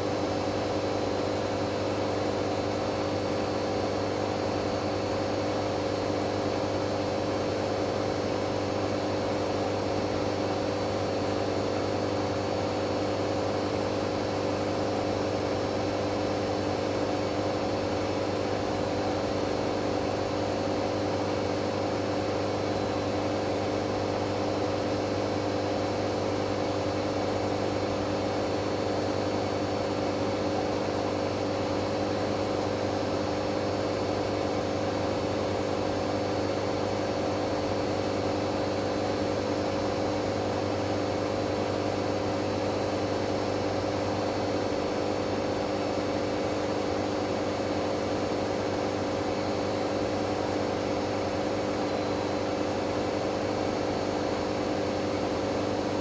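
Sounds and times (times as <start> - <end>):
washing machine spinning: 12.6 - 56.0.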